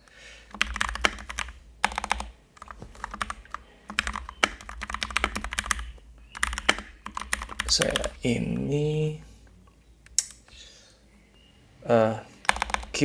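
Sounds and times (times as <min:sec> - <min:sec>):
mechanical keyboard typing: 0:00.5 - 0:08.2, 0:12.5 - 0:13.0.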